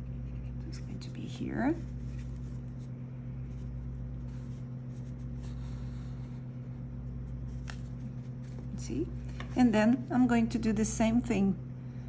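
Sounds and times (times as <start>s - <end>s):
low electrical hum: 0.0s - 12.0s.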